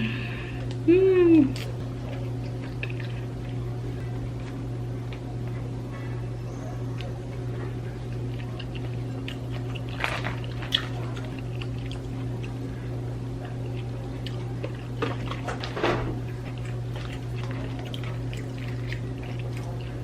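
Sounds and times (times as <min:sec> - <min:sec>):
low hum: 0:00.0 - 0:20.0
wet chewing and squishing: 0:01.5 - 0:20.0.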